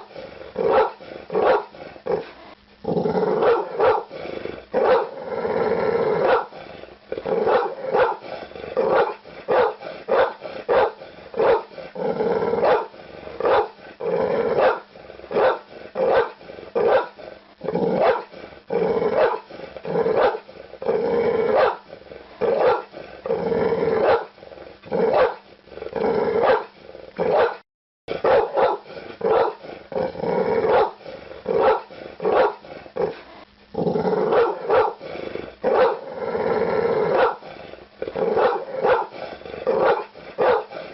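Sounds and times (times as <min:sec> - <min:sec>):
dog barking: 0:00.7 - 0:01.7, 0:03.4 - 0:04.1, 0:04.8 - 0:05.1, 0:06.2 - 0:06.5, 0:07.4 - 0:08.2, 0:08.8 - 0:11.7, 0:12.6 - 0:13.8, 0:14.6 - 0:17.2, 0:18.0 - 0:18.3, 0:19.2 - 0:19.5, 0:20.2 - 0:20.4, 0:21.5 - 0:21.8, 0:22.5 - 0:22.9, 0:24.0 - 0:24.3, 0:25.1 - 0:25.4, 0:26.4 - 0:26.7, 0:27.3 - 0:27.6, 0:28.2 - 0:29.6, 0:30.7 - 0:31.0, 0:31.6 - 0:32.6, 0:34.3 - 0:35.0, 0:35.7 - 0:36.0, 0:37.1 - 0:37.4, 0:38.4 - 0:39.2, 0:39.8 - 0:40.7.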